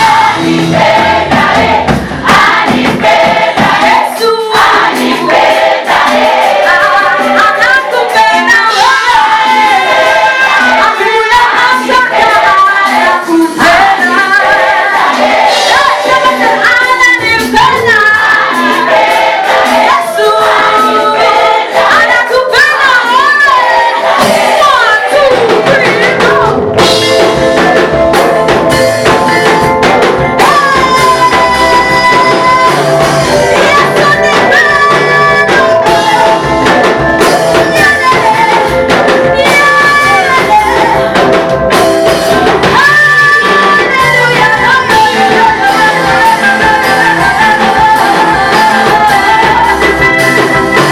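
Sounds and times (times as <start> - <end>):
bass and drums: 0.0 - 7.1, 15.3 - 18.3, 24.1 - 50.9
group of voices singing: 0.0 - 50.9.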